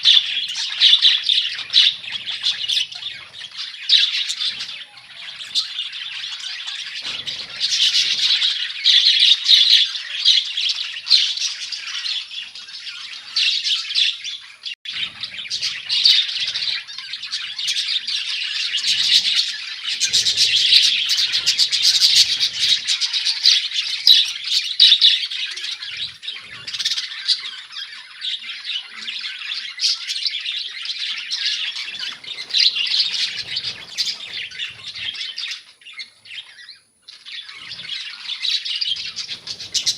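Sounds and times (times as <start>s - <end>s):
budgerigars chattering and squawking: 0.0s - 39.9s.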